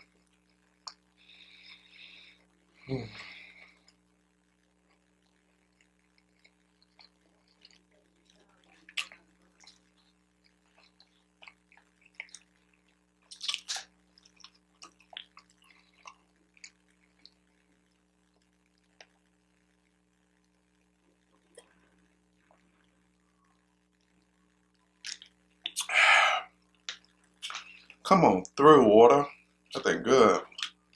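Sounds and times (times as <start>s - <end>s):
faint steady hum: 0.0s - 30.9s
person eating mouth sounds: 13.3s - 17.4s, 25.0s - 28.0s.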